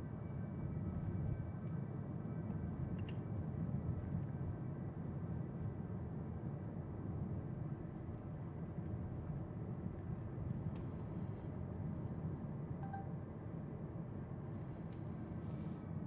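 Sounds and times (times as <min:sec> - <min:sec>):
soft ding: 0:12.8 - 0:13.1.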